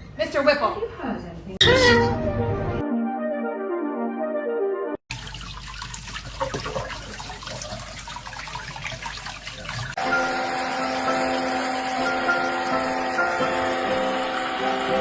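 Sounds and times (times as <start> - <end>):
water running and splashing: 5.1 - 10.0.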